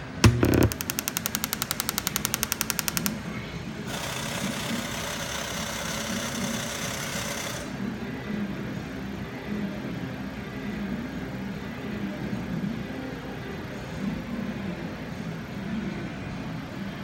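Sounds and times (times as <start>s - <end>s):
rapid clatter of sharp clicks: 0.2s - 3.2s.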